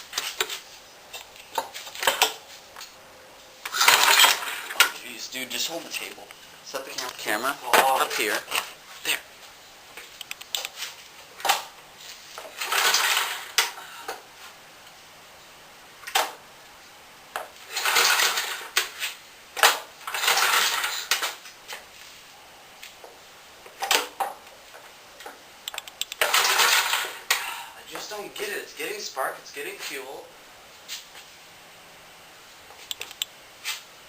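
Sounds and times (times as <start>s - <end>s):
engine pull-start cranking: 3.7s - 4.8s, 12.6s - 13.4s, 17.8s - 18.6s, 26.2s - 27.2s.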